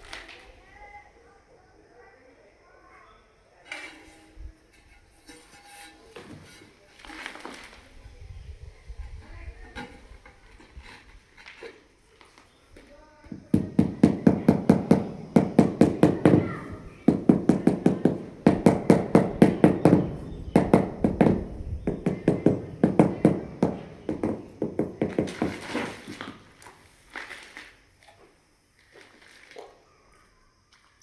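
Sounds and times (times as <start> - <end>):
tapping on floor tile: 13.3 - 26.5.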